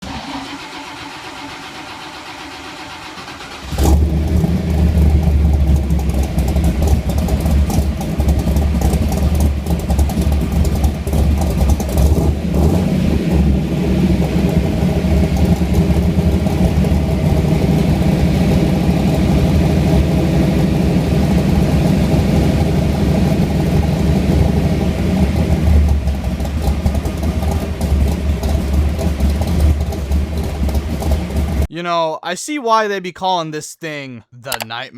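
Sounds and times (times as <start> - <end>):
car engine idling: 0.0 - 12.3, 13.5 - 31.7
car engine cranking: 0.0 - 12.8.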